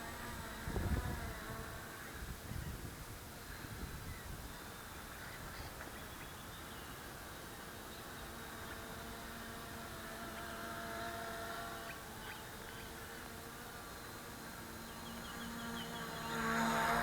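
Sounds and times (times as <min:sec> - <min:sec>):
quadcopter propellers buzzing: 0:00.0 - 0:02.6, 0:07.3 - 0:17.0.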